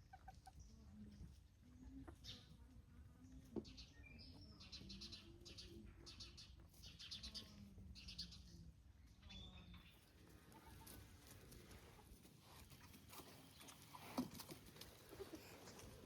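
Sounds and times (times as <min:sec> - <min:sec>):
chicken murmurs: 0:10.2 - 0:16.0.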